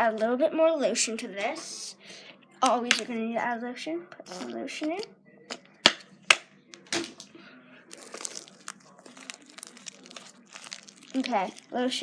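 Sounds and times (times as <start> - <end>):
soft crackling of slime: 7.8 - 12.0.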